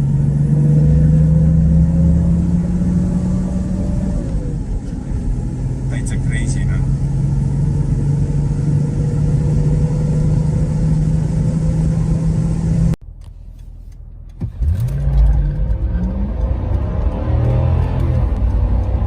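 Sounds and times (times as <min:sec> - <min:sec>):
engine accelerating: 0:00.0 - 0:13.0, 0:14.3 - 0:19.0
vehicle engine droning: 0:00.0 - 0:19.0.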